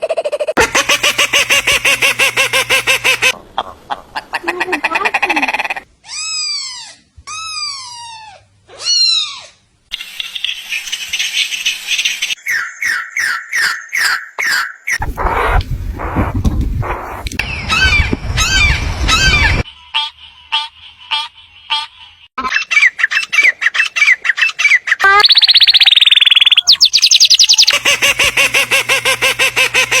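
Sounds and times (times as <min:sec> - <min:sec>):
animal crying: 0:06.0 - 0:09.6
bird calls: 0:10.1 - 0:19.7, 0:22.4 - 0:30.0.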